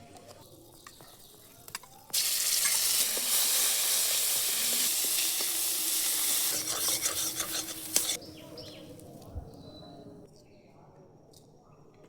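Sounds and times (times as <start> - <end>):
food sizzling in hot oil: 2.1 - 8.2.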